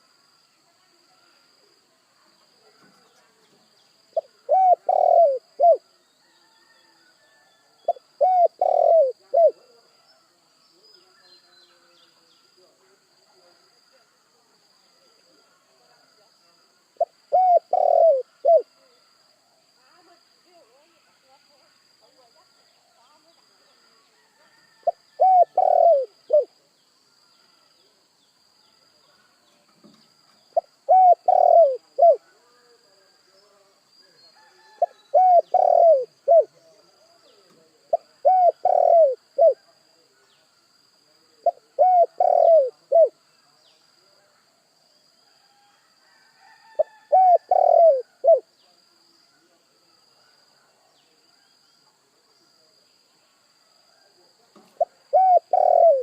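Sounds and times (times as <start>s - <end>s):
dove cooing: 4.2s - 5.9s, 7.8s - 9.8s, 17.0s - 18.8s, 24.8s - 26.6s, 30.6s - 32.4s, 34.8s - 36.7s, 37.8s - 39.6s, 41.4s - 43.2s, 46.8s - 48.5s, 54.8s - 56.0s.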